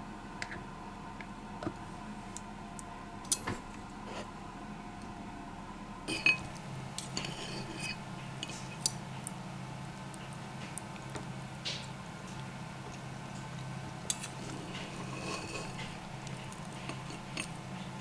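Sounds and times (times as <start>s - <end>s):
steady low hum: 0.0s - 18.0s
kitchenware clinking: 6.1s - 8.9s, 14.1s - 18.0s.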